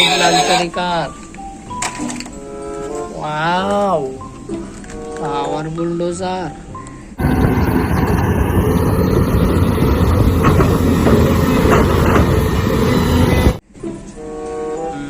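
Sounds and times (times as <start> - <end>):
toy bulldozer rumbling and rattling: 7.2 - 13.6.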